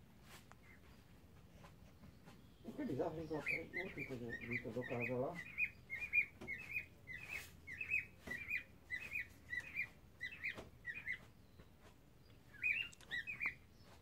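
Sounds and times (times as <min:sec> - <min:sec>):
cockatiels chirping: 0:02.6 - 0:11.4, 0:12.5 - 0:14.0.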